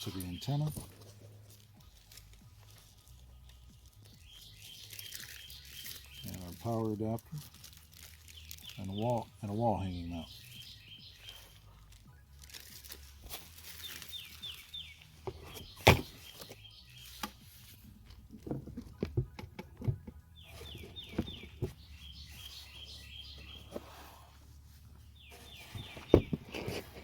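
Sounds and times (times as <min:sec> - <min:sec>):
sharp clicks and knocks: 0:18.0 - 0:21.8.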